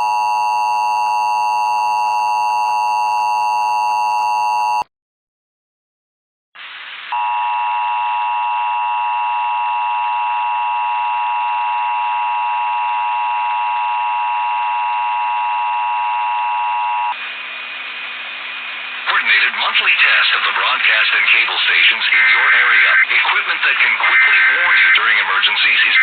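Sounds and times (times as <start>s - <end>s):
two-tone alert alarm: 0.0s - 4.8s
faint high whine: 7.0s - 17.3s.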